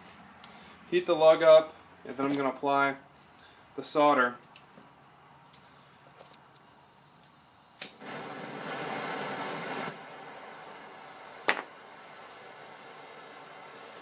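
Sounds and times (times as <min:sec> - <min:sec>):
gas torch hissing: 0:06.5 - 0:14.0
torch ignition click: 0:07.2 - 0:10.1, 0:11.4 - 0:11.9.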